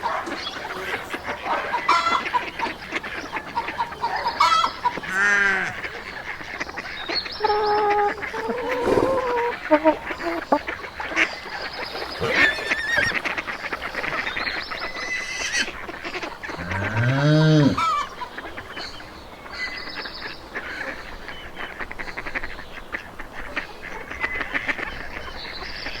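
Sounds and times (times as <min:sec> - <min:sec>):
low drawn-out call: 0:00.0 - 0:10.8, 0:12.0 - 0:14.4
geese and ducks honking: 0:00.0 - 0:26.0.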